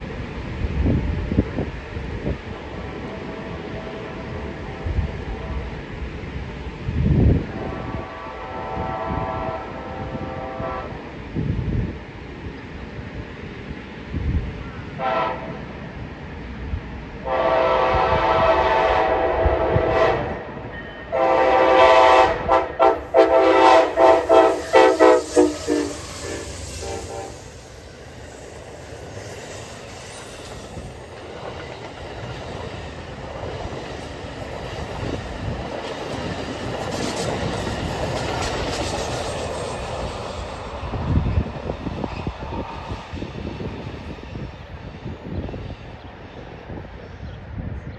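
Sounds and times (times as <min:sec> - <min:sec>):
train air horn blasts: 0:07.5 - 0:11.0, 0:15.0 - 0:15.7, 0:17.2 - 0:27.7
train wheels clattering on rails: 0:20.6 - 0:46.2.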